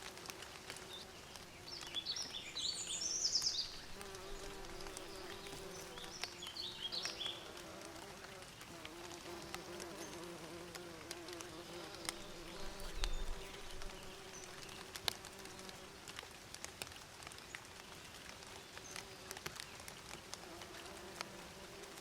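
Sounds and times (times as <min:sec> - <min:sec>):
bees buzzing: 0:02.9 - 0:15.8.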